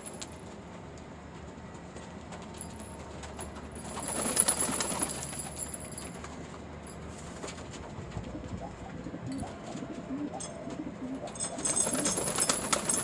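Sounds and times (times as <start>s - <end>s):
pigeons cooing: 8.2s - 12.7s.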